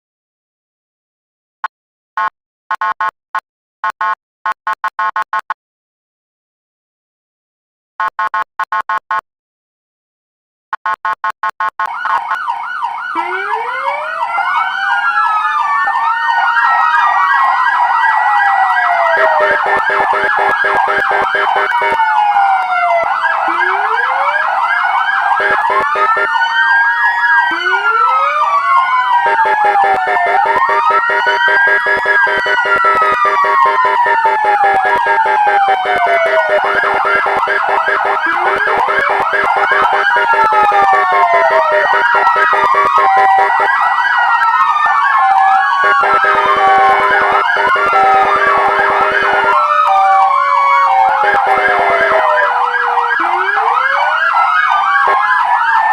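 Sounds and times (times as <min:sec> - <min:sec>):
fire truck sirens wailing: 0:11.8 - 0:55.9.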